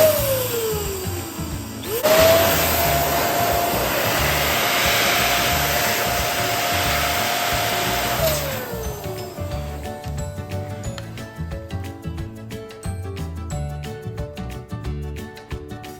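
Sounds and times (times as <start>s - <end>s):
electric balloon pump whining: 0.0s - 11.2s
rush of air: 1.9s - 8.6s.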